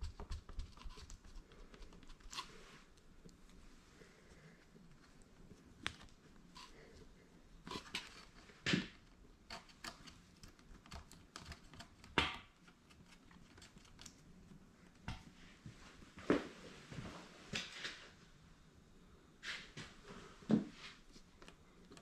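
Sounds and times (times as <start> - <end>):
clicks and taps of hands and tools: 9.5 - 12.7.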